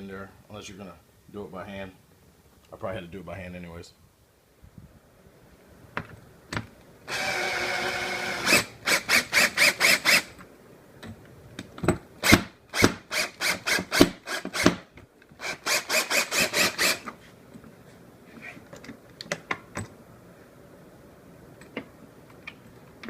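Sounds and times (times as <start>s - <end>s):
power drill whining: 7.1s - 10.3s, 12.2s - 14.8s, 15.4s - 17.1s.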